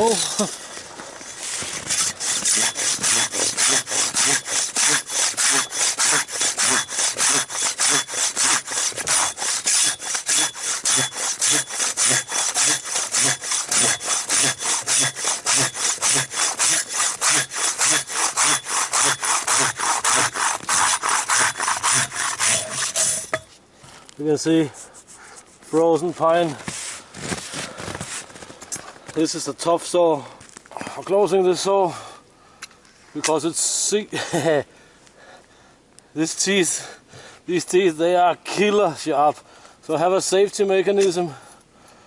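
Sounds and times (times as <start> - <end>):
handsaw cutting log: 0.0 - 23.5.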